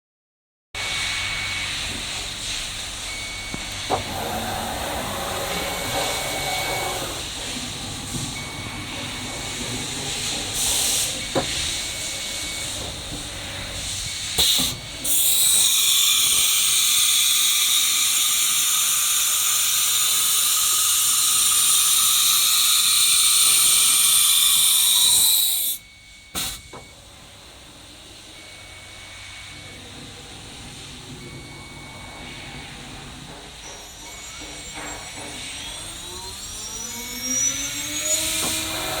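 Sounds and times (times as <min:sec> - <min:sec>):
cnc router machine noise: 0:03.7 - 0:26.6, 0:31.7 - 0:39.0.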